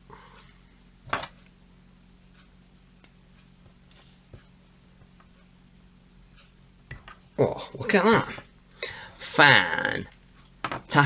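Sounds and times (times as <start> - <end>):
low electrical hum: 0.0 - 11.0.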